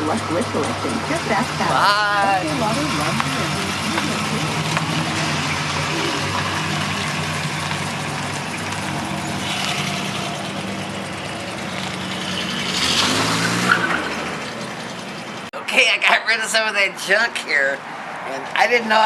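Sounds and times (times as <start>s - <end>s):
motor vehicle engine running: 0.0s - 15.5s
road noise: 0.0s - 19.0s.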